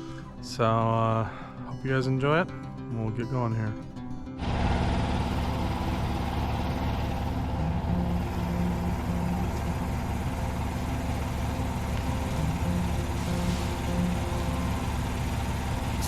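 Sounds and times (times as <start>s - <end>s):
tractor engine running: 4.4s - 16.0s.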